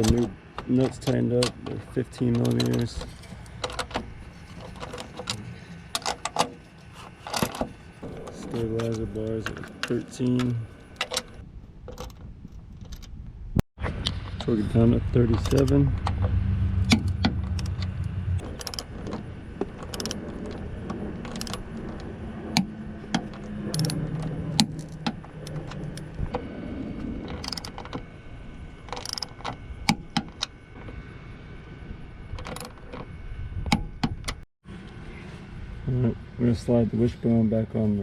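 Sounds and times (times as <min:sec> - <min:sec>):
low steady hum: 0:00.0 - 0:38.0
socket wrench ratcheting: 0:16.9 - 0:26.1, 0:27.3 - 0:28.0, 0:28.8 - 0:30.5.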